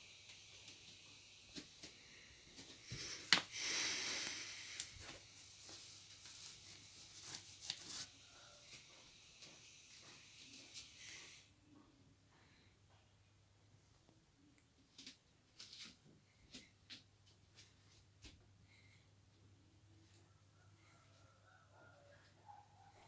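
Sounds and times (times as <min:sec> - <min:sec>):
high wheezing hiss: 0:01.8 - 0:05.4, 0:08.3 - 0:11.5
person breathing noisily: 0:02.0 - 0:05.1, 0:11.0 - 0:11.5.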